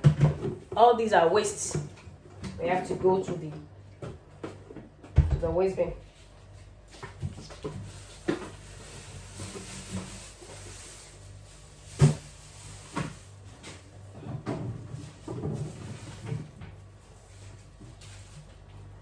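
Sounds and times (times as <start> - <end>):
food containers knocking and clattering: 0.0 - 0.9, 11.9 - 16.8.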